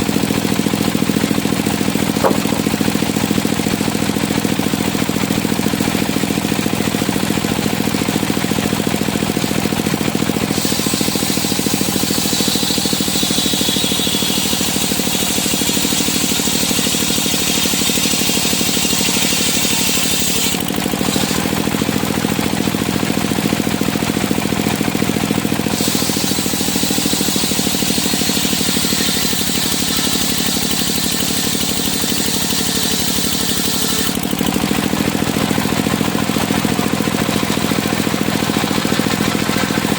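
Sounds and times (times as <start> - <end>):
saw blade whining through timber: 0.0 - 39.9
sawmill engine running: 0.0 - 39.9.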